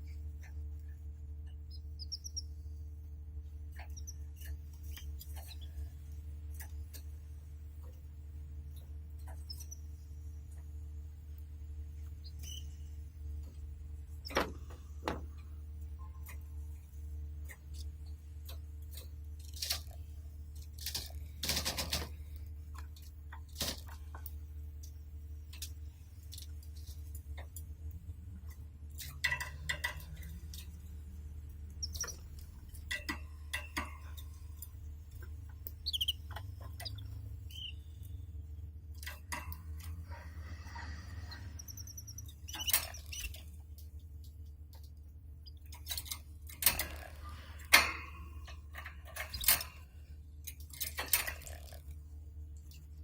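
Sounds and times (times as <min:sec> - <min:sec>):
canary chirps: 0:00.0 - 0:03.0, 0:03.7 - 0:06.7, 0:08.7 - 0:10.2, 0:12.0 - 0:13.1, 0:31.6 - 0:38.5, 0:40.0 - 0:43.6, 0:44.8 - 0:46.2, 0:49.2 - 0:49.6
steady low hum: 0:00.0 - 0:53.0
birds rustling in cage: 0:18.4 - 0:24.3, 0:28.5 - 0:37.8, 0:38.9 - 0:43.7, 0:45.7 - 0:51.8.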